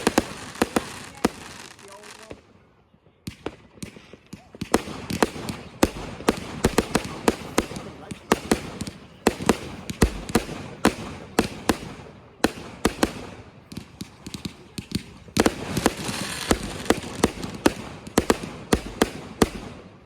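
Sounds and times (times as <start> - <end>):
fireworks bangs: 0.0 - 2.6, 3.2 - 20.0
hissing crackle: 5.4 - 18.4.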